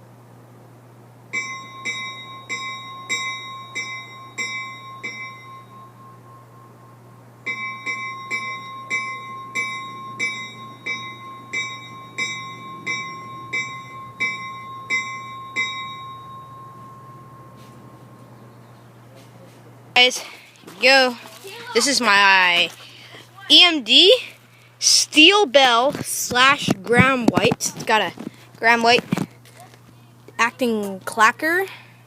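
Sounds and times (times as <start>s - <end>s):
locomotive bell ringing: 1.3s - 24.3s.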